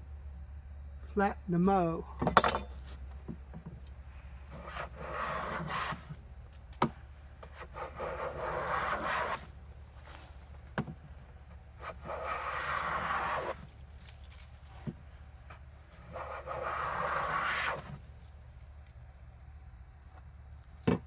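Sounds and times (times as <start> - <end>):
plane rubbing on wood: 4.5 - 6.2, 7.4 - 10.3, 11.8 - 13.7, 16.0 - 18.0.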